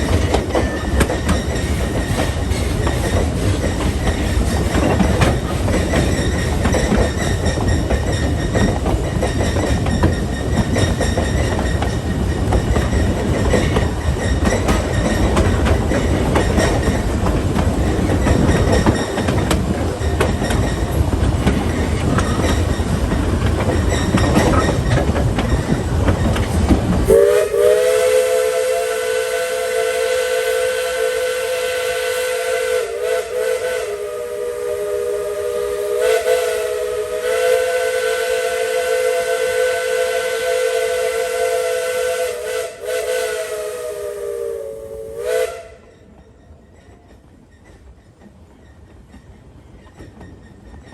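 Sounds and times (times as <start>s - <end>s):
train wheels clattering over rails: 0.0s - 29.3s, 45.3s - 50.9s
steam whistle blast: 27.1s - 45.9s.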